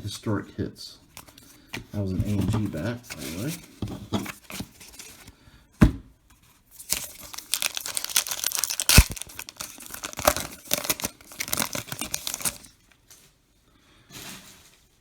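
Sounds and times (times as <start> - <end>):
card pack wrapper tearing: 6.8 - 12.7.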